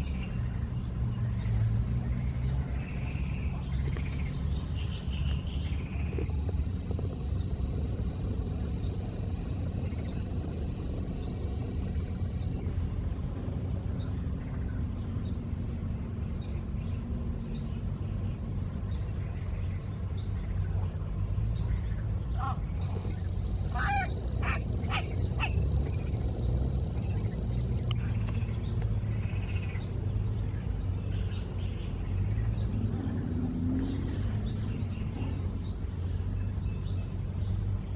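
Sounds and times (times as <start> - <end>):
bird chirping: 0.0 - 12.7, 13.7 - 37.9
low rushing noise: 0.0 - 37.9
high steady buzz: 4.0 - 14.2, 21.7 - 30.6
short animal calls: 22.4 - 25.8.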